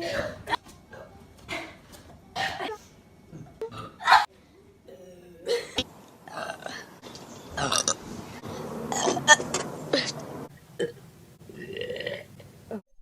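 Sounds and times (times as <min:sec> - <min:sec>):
young woman burping: 0:10.8 - 0:12.3.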